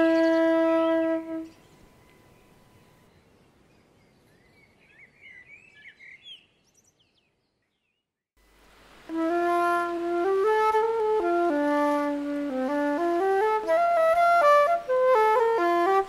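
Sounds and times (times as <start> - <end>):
flute melody: 0.0 - 3.0, 9.1 - 16.0
birds chirping: 0.0 - 8.1
faint hiss: 8.4 - 16.0.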